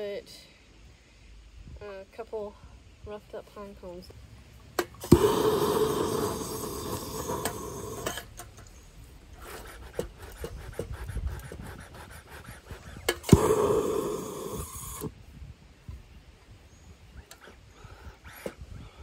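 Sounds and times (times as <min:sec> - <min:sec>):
torch ignition click: 0:04.8 - 0:08.7, 0:13.1 - 0:15.1
torch flame hissing: 0:05.0 - 0:08.3, 0:12.2 - 0:15.1.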